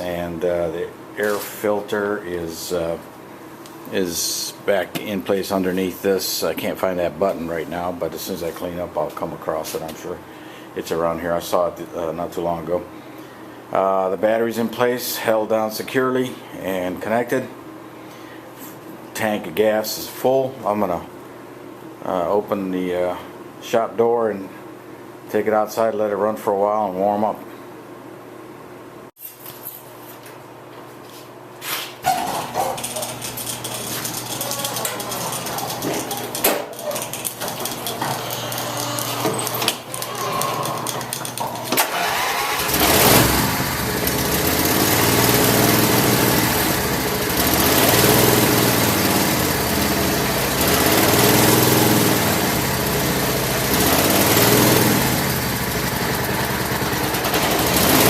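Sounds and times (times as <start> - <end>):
lawn tractor engine running: 41.8 - 58.0.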